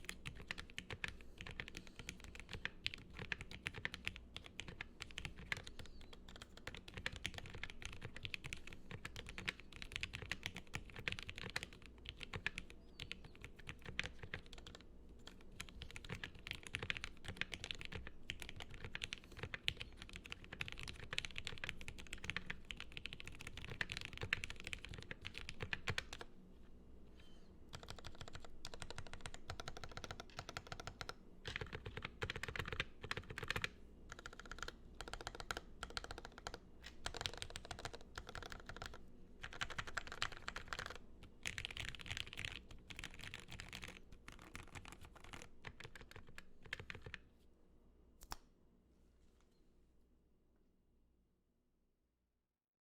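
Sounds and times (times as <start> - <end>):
fast mechanical keyboard typing: 0.0 - 26.2, 27.7 - 47.2.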